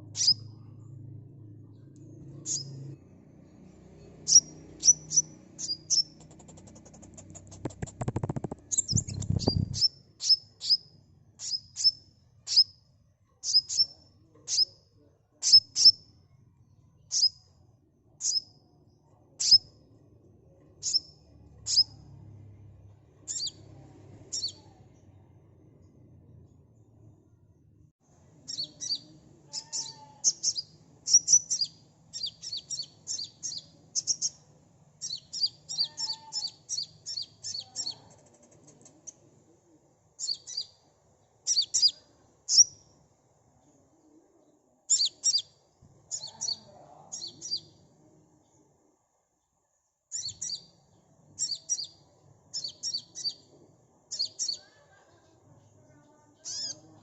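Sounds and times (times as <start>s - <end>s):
bird chirping song: 0.0s - 1.1s, 1.7s - 14.8s, 15.4s - 16.2s, 17.0s - 19.9s, 20.6s - 22.5s, 23.2s - 25.2s, 28.4s - 38.1s, 40.2s - 43.0s, 44.9s - 47.9s, 50.1s - 54.8s, 56.4s - 57.0s.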